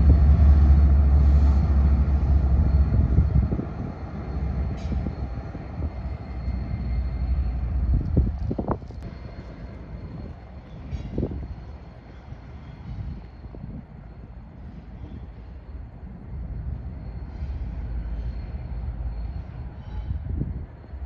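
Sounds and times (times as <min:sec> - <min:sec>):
train rumbling by: 0:00.0 - 0:21.0.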